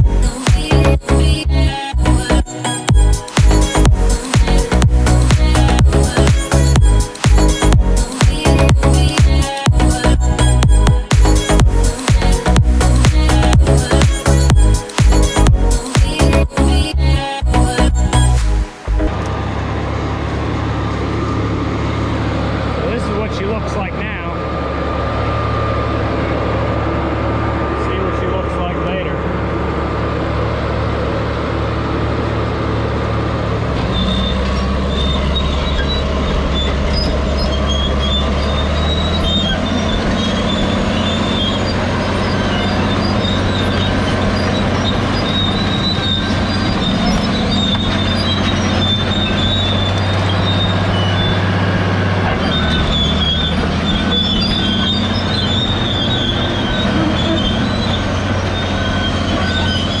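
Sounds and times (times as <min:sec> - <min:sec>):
bulldozer diesel engine running: 0:00.0 - 1:00.0
steel tracks squealing: 0:33.8 - 1:00.0.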